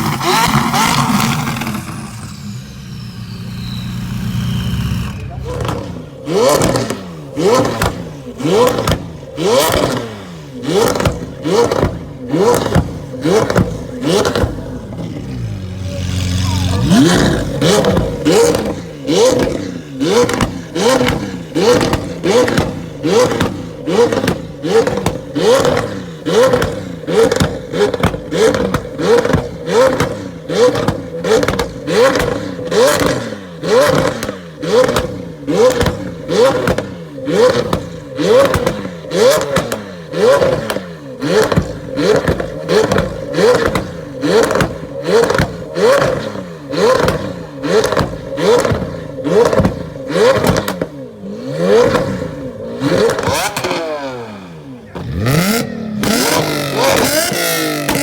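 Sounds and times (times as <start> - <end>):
exhaust crackles and pops: 0.0 - 2.9, 3.8 - 58.0
car engine revving: 0.0 - 58.0.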